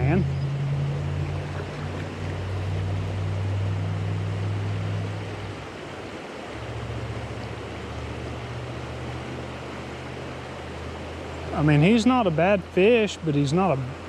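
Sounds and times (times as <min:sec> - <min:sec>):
rushing creek water: 0:00.0 - 0:14.0.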